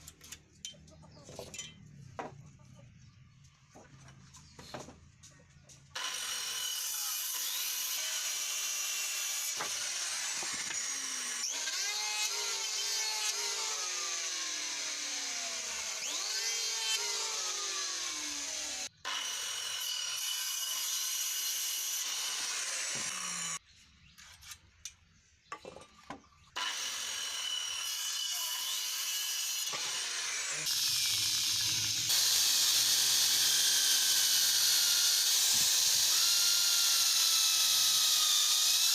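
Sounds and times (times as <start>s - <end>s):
power tool cutting wood: 5.9s - 23.6s, 26.6s - 38.9s.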